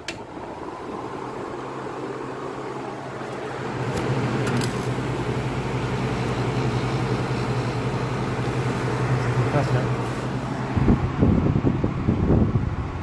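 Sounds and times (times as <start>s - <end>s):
air conditioner clicks: 0.0s - 0.5s, 3.2s - 5.2s
air conditioner running: 0.0s - 13.0s
compressor humming: 0.0s - 13.0s.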